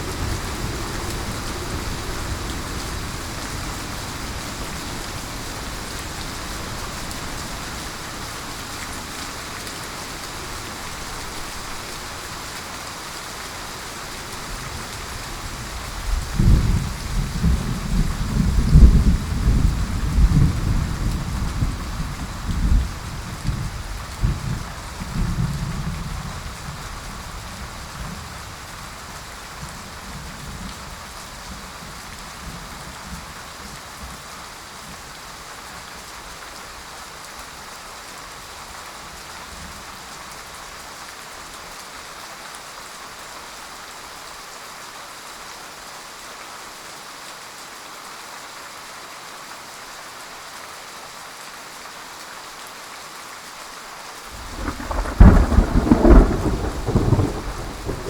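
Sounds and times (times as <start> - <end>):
low thunder rumble: 0.0 - 8.4, 14.6 - 26.5, 54.4 - 58.0
heavy rain: 0.0 - 58.0
loud thunderclap: 54.4 - 58.0.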